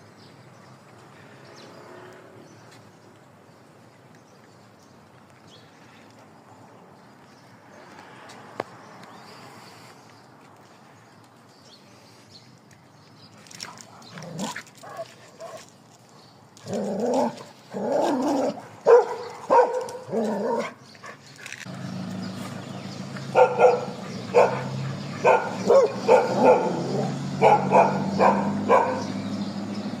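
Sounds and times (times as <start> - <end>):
dogs barking: 13.9 - 15.7, 16.7 - 21.2, 23.2 - 29.3.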